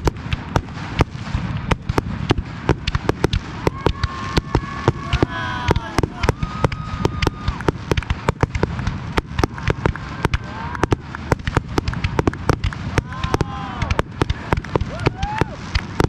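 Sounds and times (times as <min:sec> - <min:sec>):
fireworks bangs and cracks: 0:00.0 - 0:16.0
low rumble: 0:00.0 - 0:16.0
firework whistle: 0:03.6 - 0:16.0.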